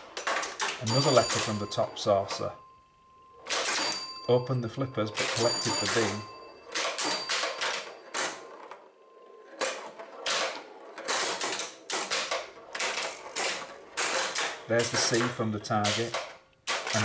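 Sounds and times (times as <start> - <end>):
pinball machine relays clicking: 0.0 - 2.6, 3.4 - 17.0.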